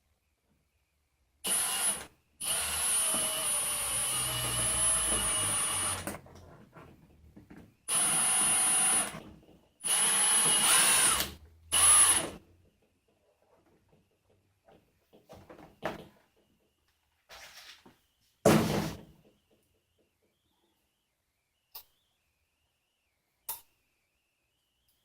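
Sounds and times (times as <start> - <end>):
power driver motor whine: 9.8 - 12.4.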